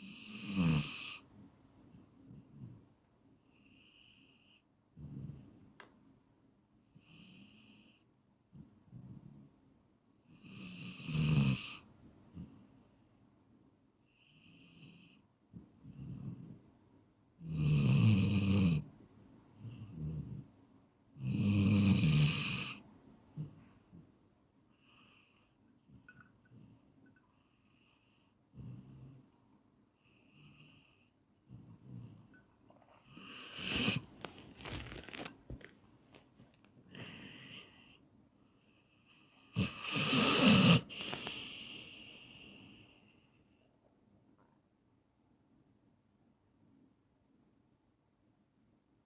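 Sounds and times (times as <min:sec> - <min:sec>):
person snoring: 0:00.0 - 0:01.2, 0:33.1 - 0:34.9, 0:39.5 - 0:42.8
quiet breaths: 0:00.0 - 0:17.4, 0:18.3 - 0:44.7
faint breath: 0:23.1 - 0:29.3, 0:36.8 - 0:39.5, 0:40.8 - 0:43.8.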